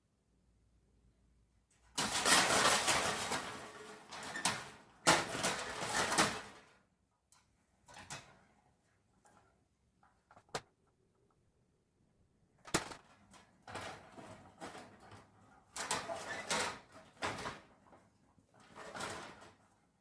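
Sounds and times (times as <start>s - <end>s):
wire cage trap rattling and clanking: 2.0s - 6.6s.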